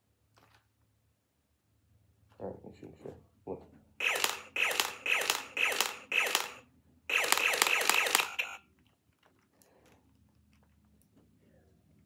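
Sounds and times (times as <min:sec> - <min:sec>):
toy blaster electronic zap tones: 0:04.0 - 0:08.6.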